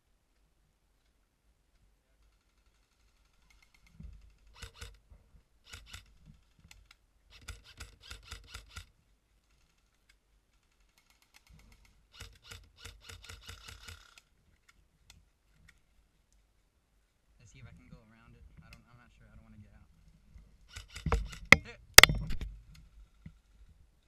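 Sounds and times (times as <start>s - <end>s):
airsoft guns firing: 21.1s - 22.5s.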